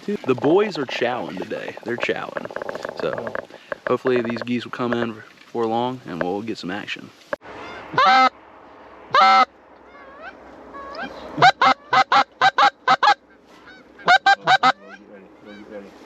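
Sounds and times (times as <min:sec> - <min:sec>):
goose clucking: 0:00.0 - 0:05.2, 0:07.6 - 0:08.3, 0:09.1 - 0:15.9
goose honking: 0:07.6 - 0:08.4, 0:09.1 - 0:16.0.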